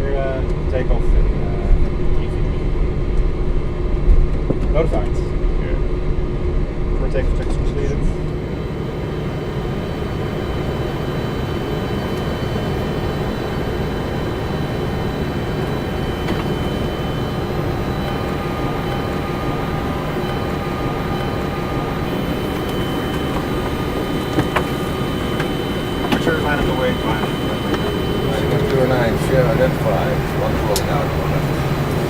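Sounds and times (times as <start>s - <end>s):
engine and airflow rumble: 0.0s - 32.0s
faint high whine: 6.9s - 32.0s.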